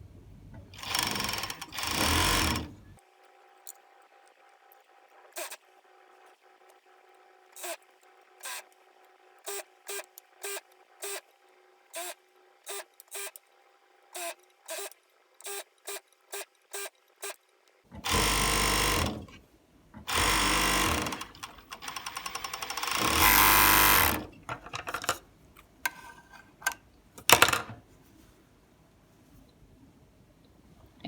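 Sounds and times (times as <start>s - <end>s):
overlock sewing machine running: 0.8s - 2.8s, 18.0s - 19.3s, 20.1s - 24.3s.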